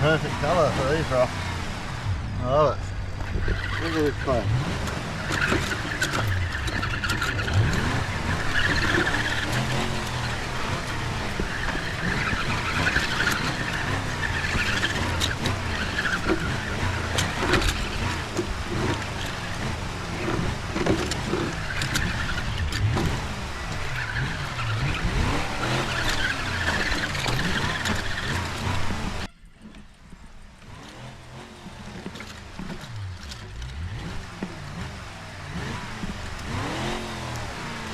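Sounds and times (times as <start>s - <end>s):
truck engine revving: 0.0s - 29.4s, 30.5s - 37.9s
scattered clicks: 4.8s - 25.0s.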